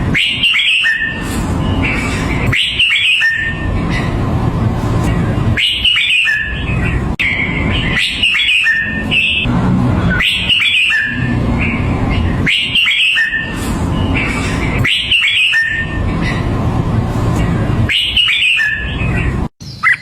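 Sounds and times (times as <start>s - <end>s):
bird singing whistled notes: 0.2s - 1.9s, 2.5s - 3.6s, 5.6s - 9.5s, 10.1s - 16.4s, 17.9s - 20.0s.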